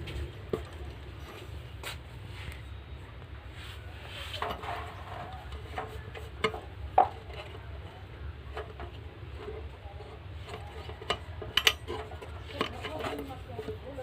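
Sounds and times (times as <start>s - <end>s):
metal clinks and knocks: 10.4s - 13.4s.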